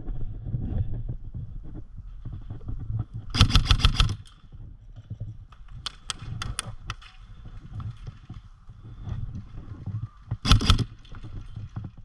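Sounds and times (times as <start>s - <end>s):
handling and movement noise: 0.2s - 12.0s
airsoft gun firing: 3.4s - 4.2s, 10.4s - 11.0s.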